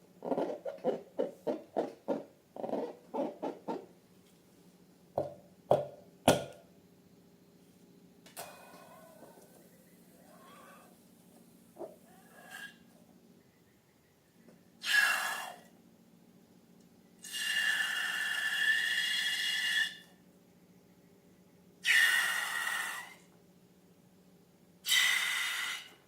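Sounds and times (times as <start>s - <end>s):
hissing air with whistling tone: 24.9s - 26.0s.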